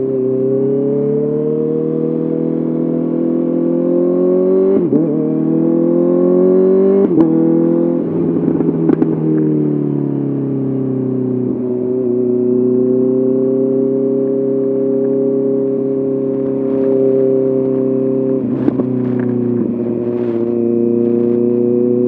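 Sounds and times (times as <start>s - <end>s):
motorcycle engine revving: 0.0s - 22.0s
exhaust pops: 8.4s - 9.5s, 16.2s - 21.5s.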